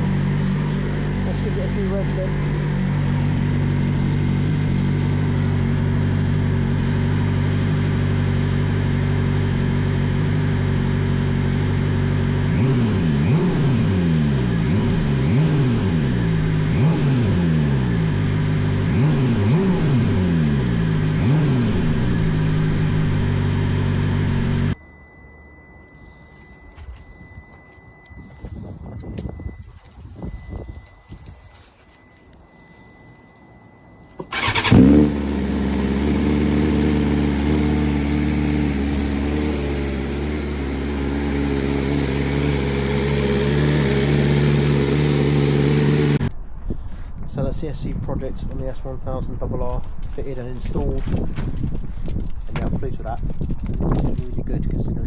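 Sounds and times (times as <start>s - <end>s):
motorcycle engine revving: 0.0s - 24.8s, 34.2s - 46.3s.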